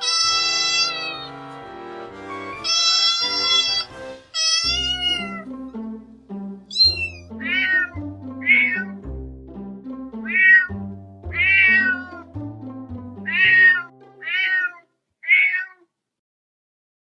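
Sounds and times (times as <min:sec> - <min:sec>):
cat meowing: 0:00.0 - 0:01.3, 0:02.6 - 0:05.5, 0:06.7 - 0:09.0, 0:10.2 - 0:12.3, 0:13.3 - 0:15.9
soft background music: 0:00.0 - 0:14.7.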